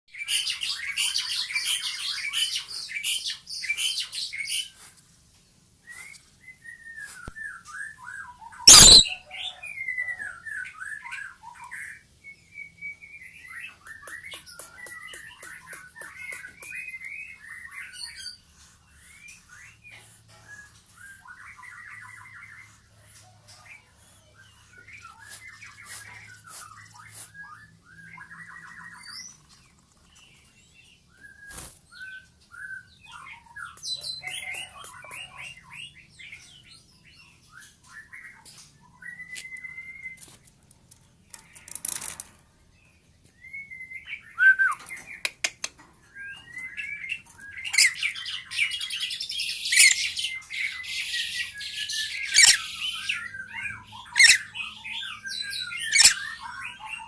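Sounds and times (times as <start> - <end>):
lorikeet chattering: 8.7 - 9.2, 47.7 - 56.8.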